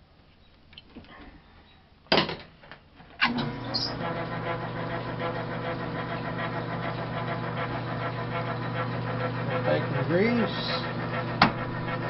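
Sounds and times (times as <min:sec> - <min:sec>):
lathe motor humming: 0:03.3 - 0:12.0
lathe starting knock: 0:10.3 - 0:12.0.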